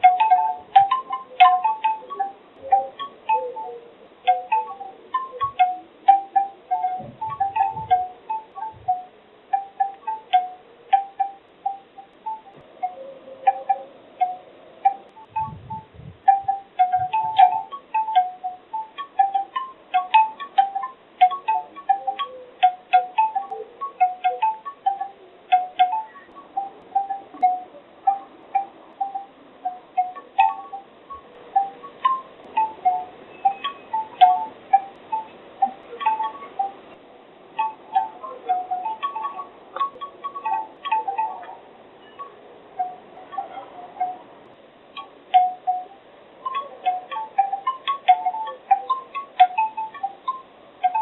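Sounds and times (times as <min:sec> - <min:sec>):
bamboo wind chimes clacking: 0:00.0 - 0:51.0.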